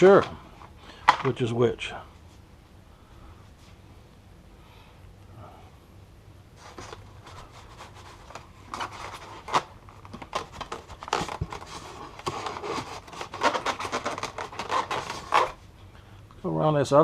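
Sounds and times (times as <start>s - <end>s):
packing material crinkling: 6.6s - 15.6s.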